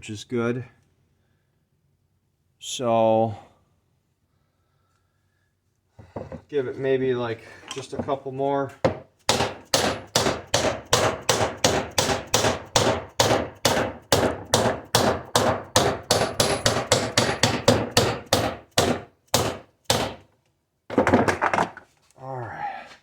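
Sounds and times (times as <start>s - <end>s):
hammer striking metal tool: 8.9s - 20.2s.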